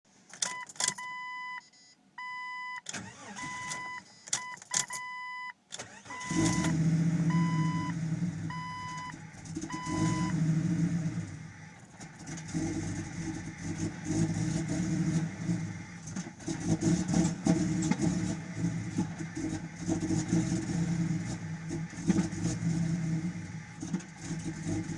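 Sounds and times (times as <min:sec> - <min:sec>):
dashboard chime beeping: 0:00.5 - 0:02.8, 0:03.4 - 0:05.5, 0:06.2 - 0:10.4
car engine cranking and running rough: 0:02.9 - 0:03.9, 0:05.7 - 0:24.9.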